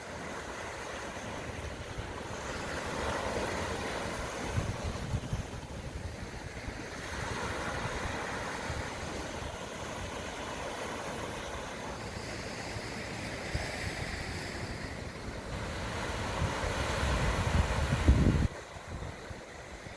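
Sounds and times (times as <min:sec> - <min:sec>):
sea waves washing onto shore: 0:00.0 - 0:19.9
wind rumble on microphone: 0:00.0 - 0:19.9.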